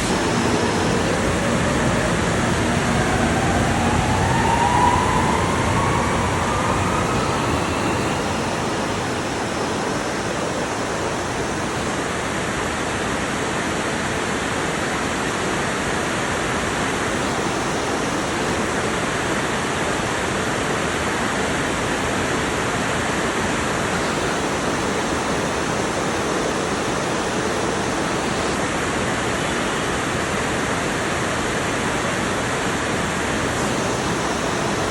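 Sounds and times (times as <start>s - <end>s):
heavy rain pouring: 0.0s - 11.8s.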